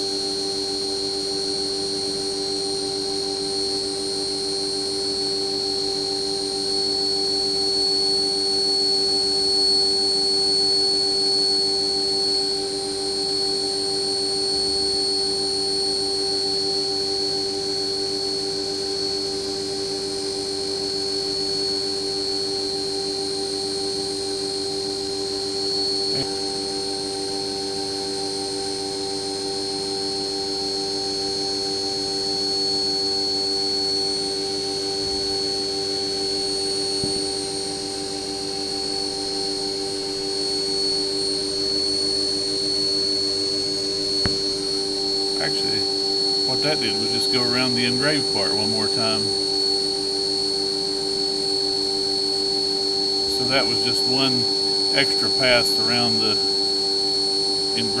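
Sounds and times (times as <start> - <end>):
milling machine spindle whining: 34.3 - 49.8, 53.0 - 56.7.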